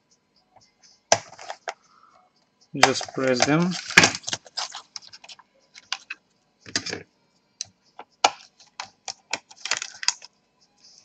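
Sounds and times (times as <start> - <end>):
plastic keyboard clicks and snaps: 2.8 - 4.4, 5.8 - 7.0, 8.2 - 10.3.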